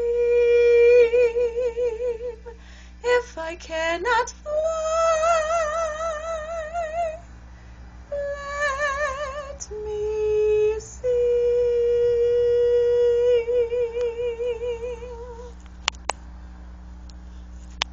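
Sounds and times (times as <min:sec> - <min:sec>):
woman singing with vibrato: 0:00.0 - 0:07.3, 0:08.1 - 0:15.6
sharp clicks: 0:15.6 - 0:16.2.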